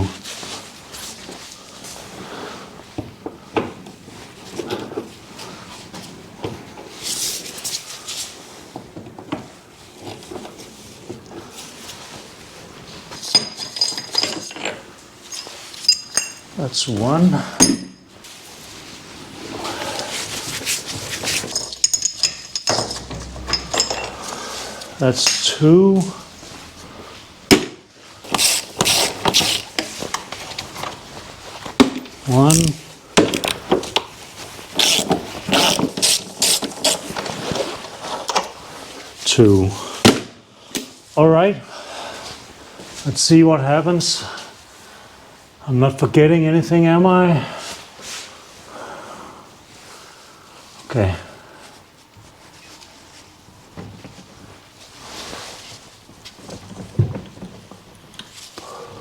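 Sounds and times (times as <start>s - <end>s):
metal tools clinking: 13.1s - 16.6s, 17.6s - 18.2s, 21.2s - 25.5s
ringing metal clinks: 15.3s - 16.5s, 21.5s - 24.4s.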